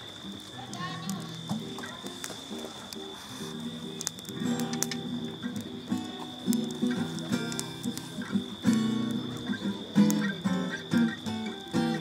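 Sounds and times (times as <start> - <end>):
sharp clicks: 3.8 - 10.3.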